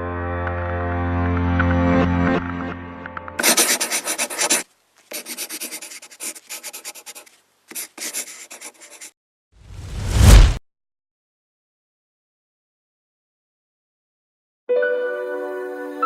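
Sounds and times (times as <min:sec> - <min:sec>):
fast rubbing strokes: 0:03.4 - 0:09.1
loud whoosh: 0:09.7 - 0:10.6.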